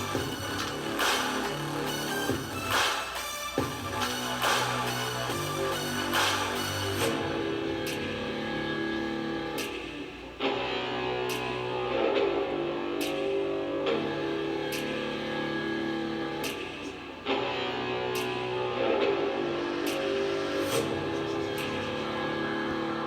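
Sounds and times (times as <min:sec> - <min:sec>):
guitar-led background music: 0:00.0 - 0:23.0.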